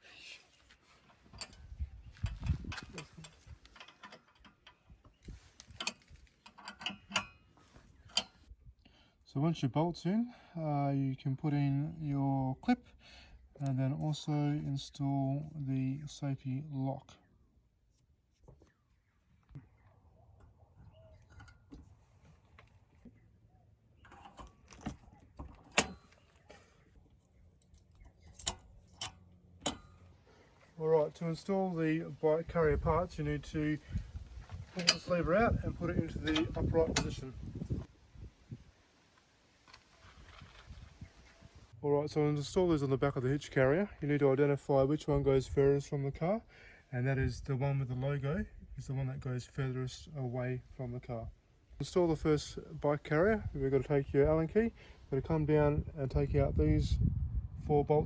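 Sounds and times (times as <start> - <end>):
metal hitch hardware rattling: 1.1 - 8.4, 21.2 - 22.2, 24.0 - 31.5, 33.4 - 37.8
metal clicks of hitch bolt: 5.6 - 7.4, 8.1 - 8.4, 24.0 - 26.7, 27.6 - 30.0, 34.8 - 35.2.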